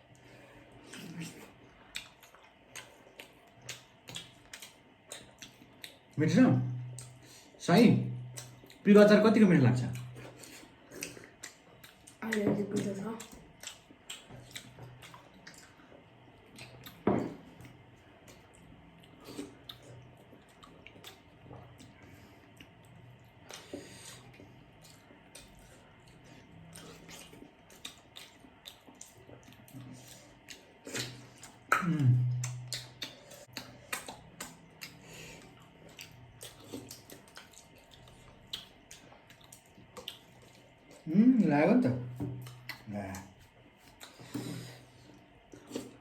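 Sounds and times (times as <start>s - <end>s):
wet chewing and slurping: 0.1s - 6.2s, 9.9s - 41.1s, 42.4s - 46.0s
eating clicks and smacks: 0.9s - 6.2s, 6.9s - 7.2s, 9.9s - 15.8s, 22.6s - 40.8s, 42.3s - 44.2s.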